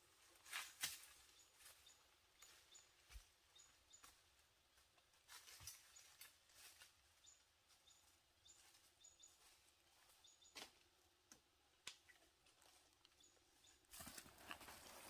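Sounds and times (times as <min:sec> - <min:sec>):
small bird chirping: 0:01.3 - 0:04.2, 0:05.6 - 0:06.4, 0:07.2 - 0:10.7, 0:12.0 - 0:14.3.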